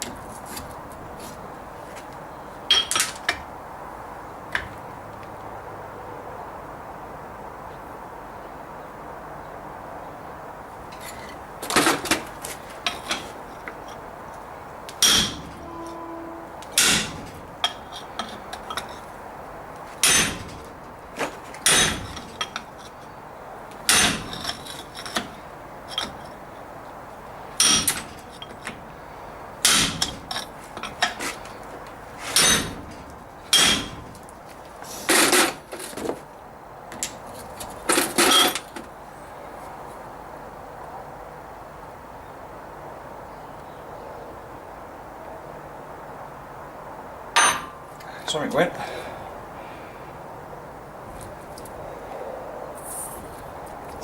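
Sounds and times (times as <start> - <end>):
hammer blows on steel: 15.0 - 18.8.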